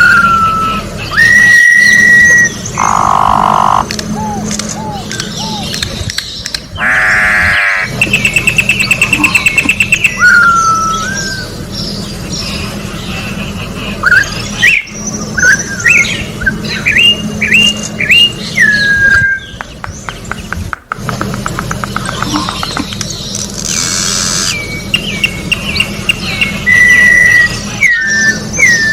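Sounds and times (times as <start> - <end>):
bird singing whistled notes: 0.0 - 5.8, 8.0 - 12.5, 14.0 - 19.6, 24.5 - 28.9
low hum: 0.0 - 28.6.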